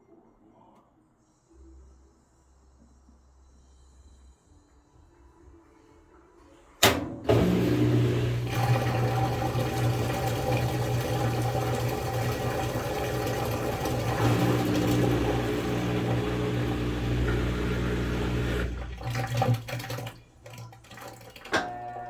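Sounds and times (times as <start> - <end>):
washing machine humming: 6.8 - 22.0.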